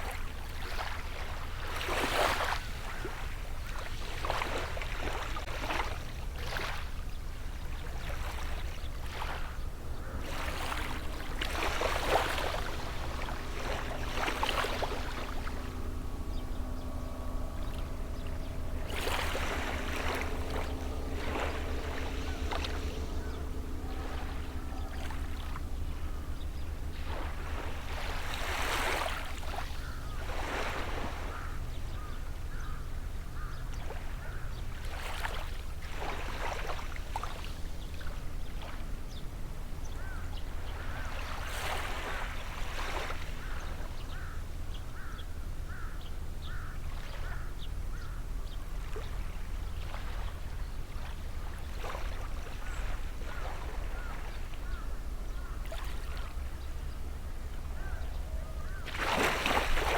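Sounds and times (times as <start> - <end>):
distant boat engine hum: 0.0 - 59.9
steady low rumble: 4.6 - 34.9, 42.4 - 59.9
sea waves washing onto shore: 8.7 - 31.6.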